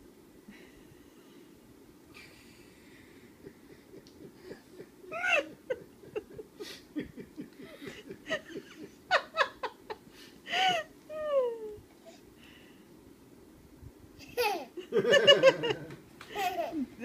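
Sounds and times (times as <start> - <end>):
laughter: 3.4 - 10.0, 14.4 - 16.8.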